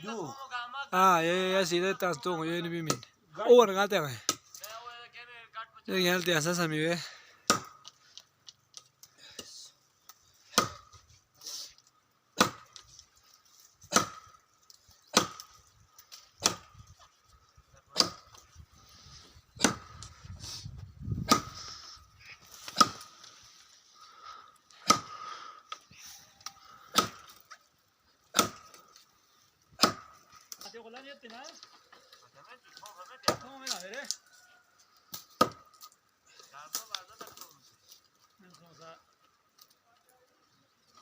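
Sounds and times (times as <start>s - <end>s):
axe chopping wood: 4.2s - 4.5s, 7.4s - 8.0s, 10.5s - 11.0s, 12.4s - 12.9s, 13.8s - 14.4s, 15.1s - 15.6s, 16.4s - 16.8s, 17.9s - 18.4s, 19.5s - 20.0s, 21.1s - 21.6s, 22.6s - 23.2s, 24.8s - 25.2s, 26.8s - 27.4s, 28.2s - 28.8s, 29.7s - 30.6s, 33.2s - 33.8s, 35.1s - 35.8s.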